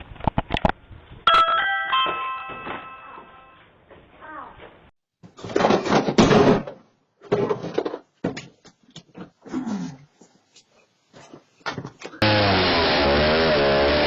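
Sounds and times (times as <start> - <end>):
loud steady drone: 12.2 - 14.0.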